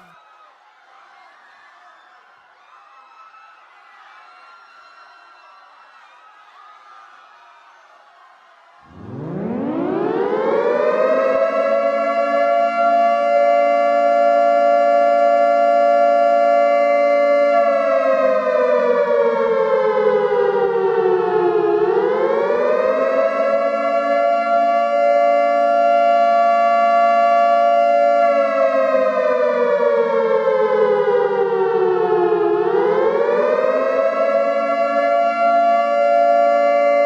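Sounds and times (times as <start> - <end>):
air raid siren wailing: 8.9 - 37.0.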